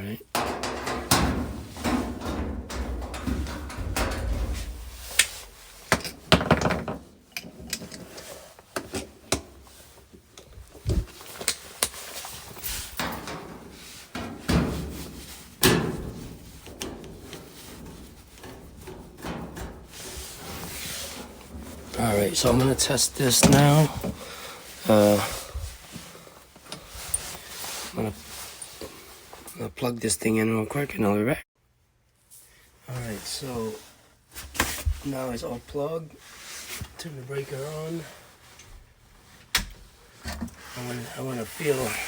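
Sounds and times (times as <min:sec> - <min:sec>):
dryer panels knocking and rattling: 0:00.3 - 0:26.0.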